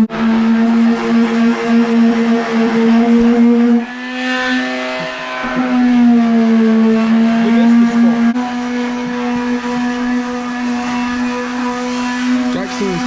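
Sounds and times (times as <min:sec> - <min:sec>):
power sander whining: 0:00.0 - 0:13.0.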